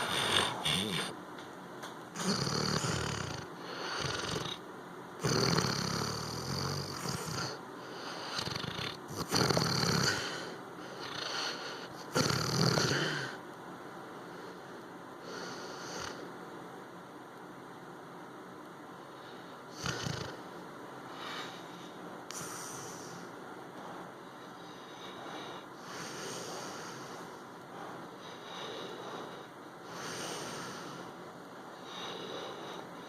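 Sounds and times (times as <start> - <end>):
dog snoring: 0.0 - 1.2, 2.2 - 4.6, 5.2 - 13.4, 15.2 - 16.3, 19.1 - 23.3, 24.4 - 27.4, 28.2 - 31.2.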